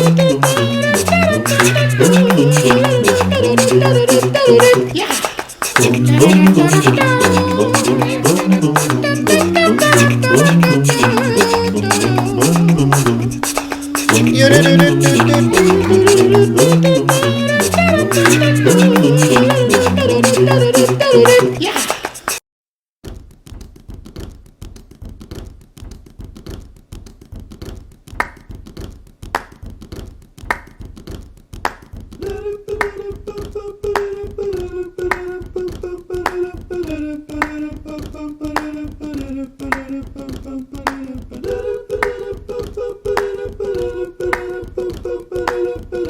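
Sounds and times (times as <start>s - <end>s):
person humming a slow tune: 0.0s - 5.1s, 5.8s - 21.6s
fast even tapping beat: 0.0s - 22.4s, 23.1s - 46.0s
loud music with singing: 0.0s - 22.4s.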